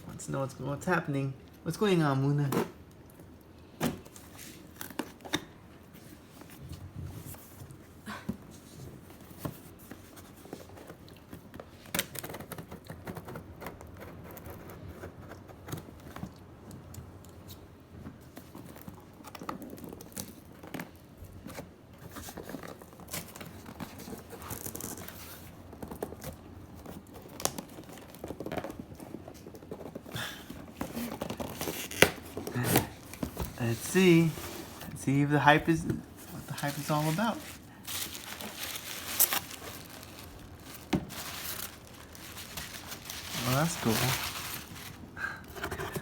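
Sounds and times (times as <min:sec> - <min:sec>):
handling clicks and rustles: 0:22.2 - 0:46.0
wrapping tearing and crinkling: 0:22.3 - 0:45.3.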